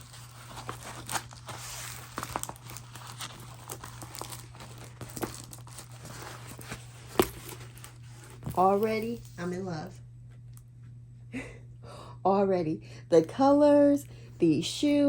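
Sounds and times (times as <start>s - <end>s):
plastic wrapping crinkling: 0.0s - 9.5s.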